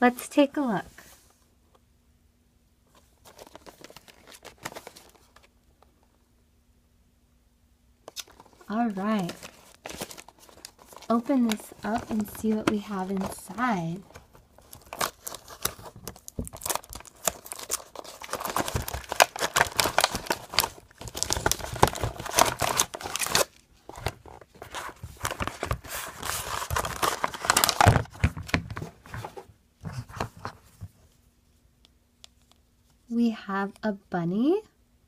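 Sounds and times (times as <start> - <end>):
packaging ripping and rustling: 3.2 - 5.5, 8.1 - 30.2.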